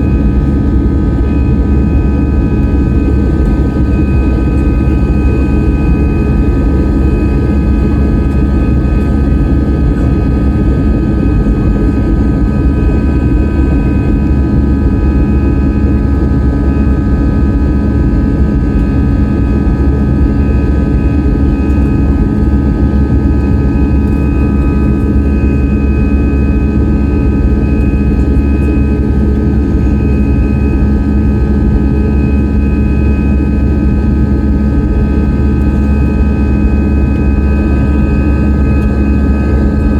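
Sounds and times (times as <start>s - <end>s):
jet engine drone in cabin: 0.0s - 39.9s.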